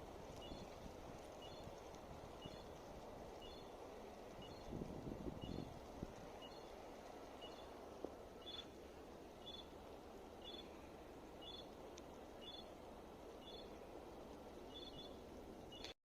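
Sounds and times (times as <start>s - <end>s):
steady background noise: 0.0s - 16.0s
small bird chirping: 3.4s - 3.8s, 7.4s - 7.8s, 8.4s - 8.8s, 9.4s - 9.8s, 10.4s - 10.8s, 11.4s - 11.7s, 12.4s - 12.8s, 13.4s - 13.8s, 14.7s - 16.0s.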